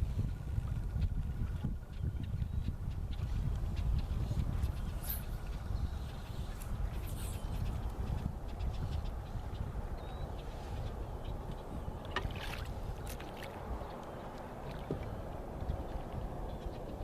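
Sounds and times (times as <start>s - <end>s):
water lapping around a boat: 0.0s - 17.0s
wind rumble on microphone: 0.0s - 17.0s
knocks and splashes: 12.0s - 13.6s, 14.6s - 15.2s.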